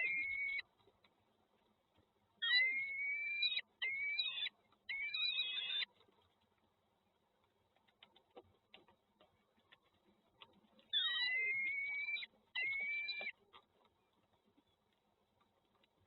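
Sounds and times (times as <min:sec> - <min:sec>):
rising whistled bird calls: 0:00.0 - 0:00.6, 0:02.4 - 0:05.9, 0:10.9 - 0:13.3
faint clicks: 0:00.0 - 0:02.4, 0:03.6 - 0:16.0.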